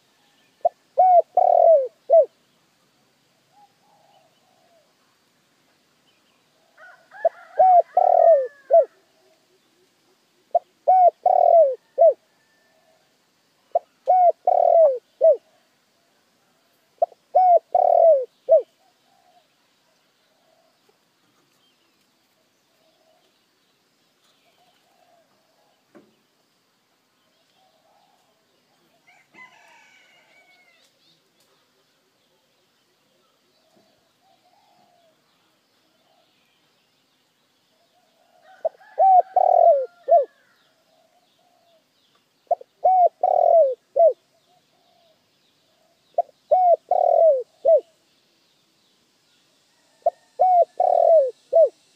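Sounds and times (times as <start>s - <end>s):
dove cooing: 0.6s - 2.4s, 6.8s - 9.3s, 10.5s - 13.1s, 13.7s - 15.6s, 17.0s - 19.5s, 24.5s - 25.8s, 33.7s - 35.2s, 38.0s - 41.9s, 42.5s - 48.0s, 49.8s - 51.8s.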